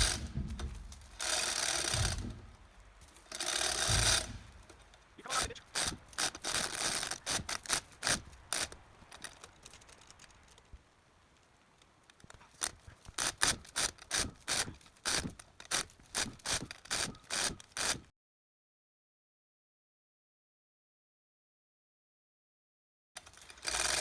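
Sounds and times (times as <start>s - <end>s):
chain hoist rattling and clicking: 0.0s - 18.1s, 23.2s - 24.0s.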